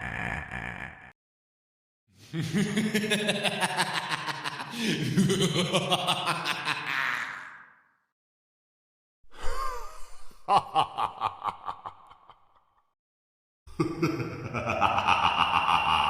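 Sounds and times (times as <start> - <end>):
breathy vocal sound: 0.0 - 1.2, 4.6 - 5.2, 9.3 - 10.5
long drawn-out vocal effect: 0.0 - 1.2, 13.8 - 16.0
staccato cackling laugh: 2.3 - 7.6, 10.5 - 12.8, 13.7 - 16.0.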